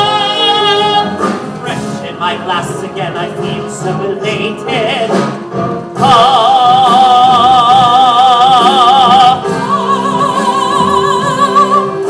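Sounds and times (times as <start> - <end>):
low musical accompaniment: 0.0 - 12.0
soprano singing operatic notes: 6.0 - 12.0.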